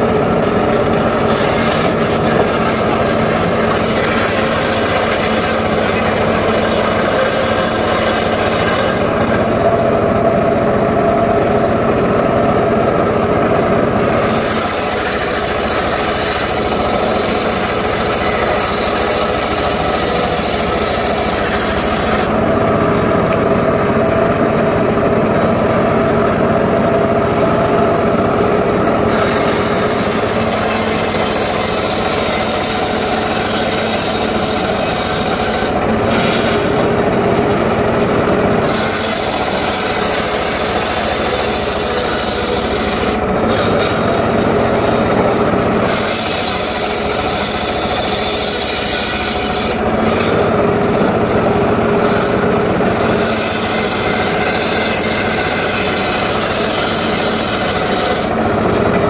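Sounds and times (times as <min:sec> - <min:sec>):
circular saw running: 0:00.0 - 0:59.0
saw blade cutting hiss: 0:14.0 - 0:22.3, 0:29.1 - 0:36.6, 0:38.6 - 0:43.8, 0:45.8 - 0:49.8.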